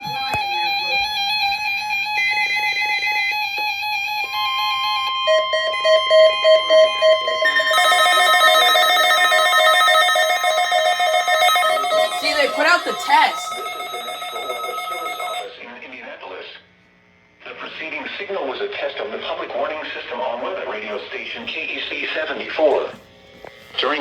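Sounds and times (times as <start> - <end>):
electronic music with synth beeps: 5.9 - 15.5.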